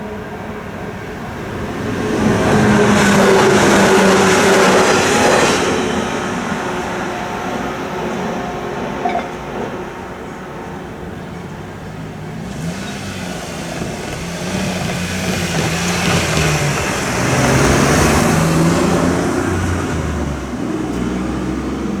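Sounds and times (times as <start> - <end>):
vehicle passing by: 12.0 - 22.0.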